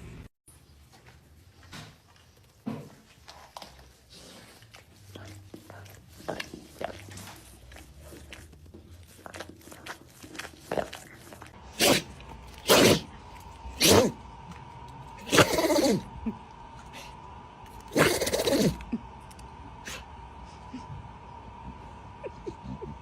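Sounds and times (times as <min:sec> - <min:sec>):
animal sneezing: 0:11.7 - 0:14.2, 0:15.2 - 0:16.1, 0:17.8 - 0:18.8.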